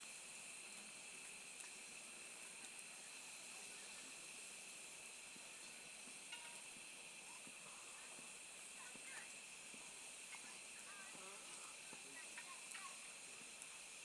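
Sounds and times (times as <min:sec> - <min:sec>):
faint steady hiss: 0:00.0 - 0:14.0
thin high steady tones: 0:01.2 - 0:14.0
soft ticks: 0:05.6 - 0:06.8.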